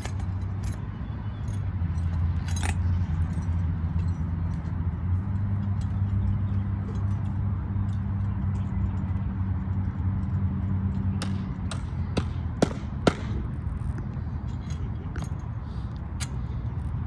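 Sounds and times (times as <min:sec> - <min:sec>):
metal clinks and clanks: 0:00.0 - 0:09.2
low engine drone: 0:00.0 - 0:17.0.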